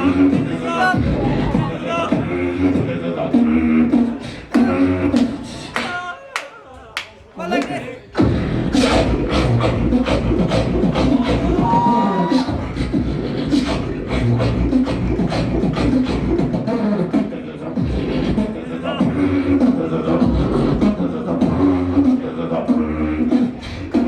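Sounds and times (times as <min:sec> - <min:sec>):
short pitched vocal phrases: 0:00.0 - 0:03.3, 0:03.9 - 0:14.6
deep bass hums: 0:00.0 - 0:05.6, 0:08.2 - 0:16.8, 0:17.7 - 0:22.1
beatboxing mouth percussion: 0:00.0 - 0:06.1, 0:07.4 - 0:24.0.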